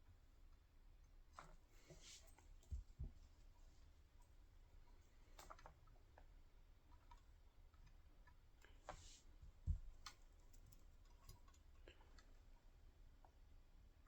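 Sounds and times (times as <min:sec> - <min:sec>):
faint clicks and taps: 0:05.3 - 0:13.4.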